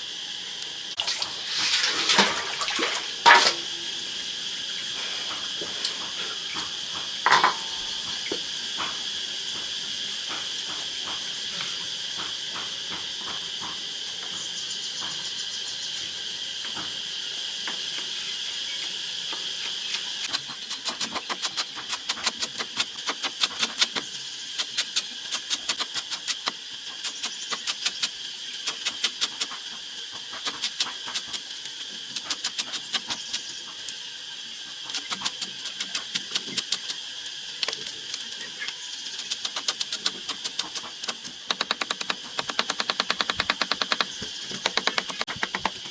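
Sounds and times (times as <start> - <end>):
high-pitched insect chirring: 14.4 - 31.4, 32.1 - 45.9
sharp rapid clicks: 19.9 - 24.0, 24.6 - 29.8, 32.1 - 33.4, 34.9 - 37.0, 37.6 - 45.9.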